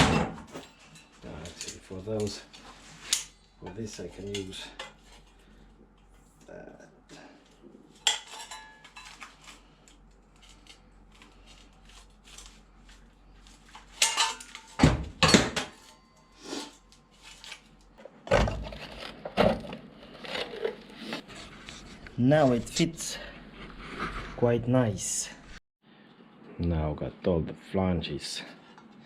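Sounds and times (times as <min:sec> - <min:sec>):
hand tools clinking on metal: 0:08.0 - 0:09.2, 0:14.0 - 0:16.4.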